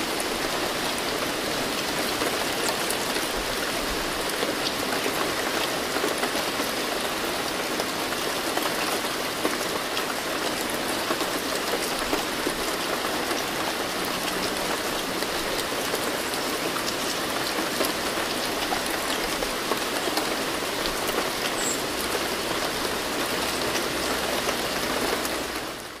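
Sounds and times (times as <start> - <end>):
steady rain: 0.0 - 26.0.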